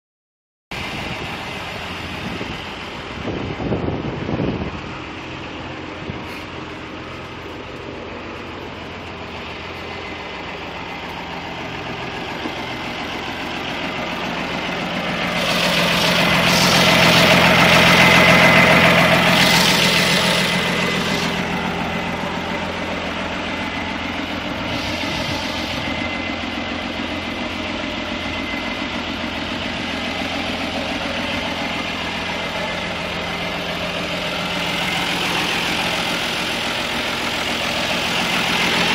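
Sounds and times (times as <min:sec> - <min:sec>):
tractor diesel engine running: 0:00.7 - 0:38.9
hiss: 0:15.3 - 0:17.9, 0:19.0 - 0:21.6, 0:24.5 - 0:26.3.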